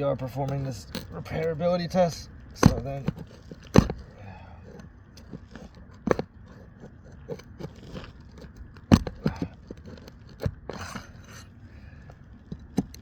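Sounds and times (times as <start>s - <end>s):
metal tool prying out nails: 0.2s - 11.4s
sharp knocks: 2.5s - 4.1s.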